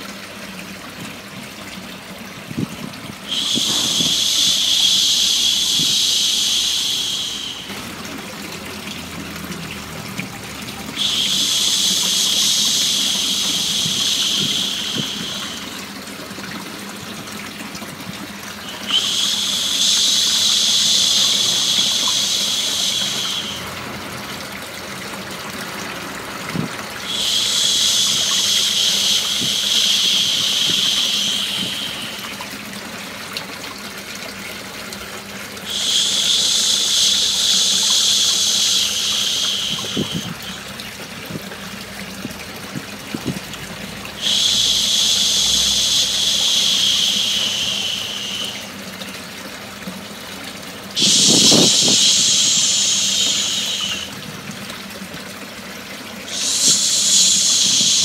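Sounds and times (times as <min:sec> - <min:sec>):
running water: 0:00.0 - 0:58.0
person shushing: 0:51.0 - 0:54.1, 0:56.3 - 0:58.0.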